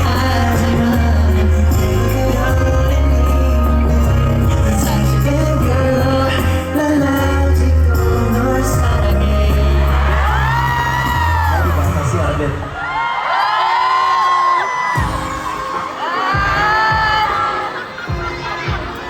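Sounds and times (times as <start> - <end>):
person singing: 0.0 - 12.1
pulsing bass line: 0.0 - 12.1.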